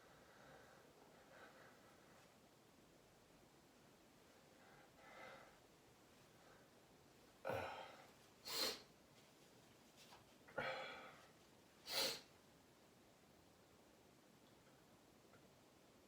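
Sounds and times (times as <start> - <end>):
person sneezing: 8.4 - 8.9, 11.9 - 12.3.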